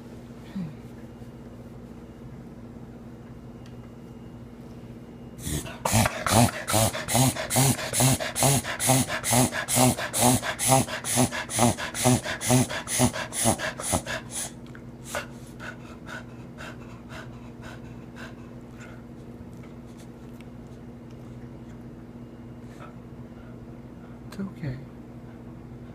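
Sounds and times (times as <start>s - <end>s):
dog wheezing breaths: 5.4s - 19.1s.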